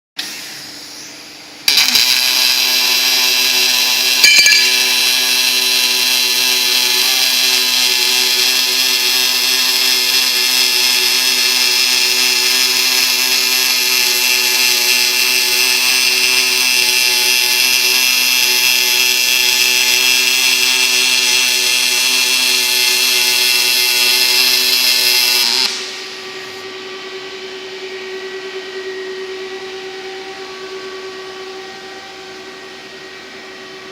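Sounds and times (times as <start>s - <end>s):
welding arc buzzing: 1.6s - 26.6s
welding arc pop: 4.2s - 5.4s
equipment hum: 25.6s - 33.9s.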